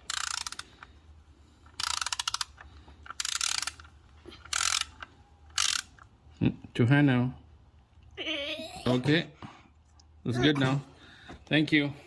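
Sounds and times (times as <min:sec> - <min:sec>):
ratchet wrench clicking: 0:00.0 - 0:00.9, 0:01.6 - 0:06.1.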